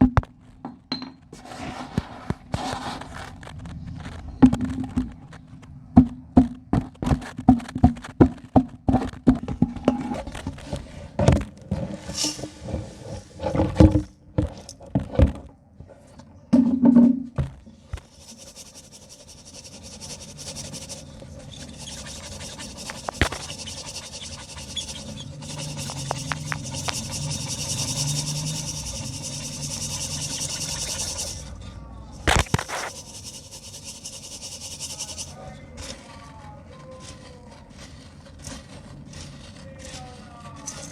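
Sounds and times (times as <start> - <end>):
brief scrape: 11.8 - 13.8, 18.0 - 36.4
cement cracking and crunching: 32.2 - 33.0.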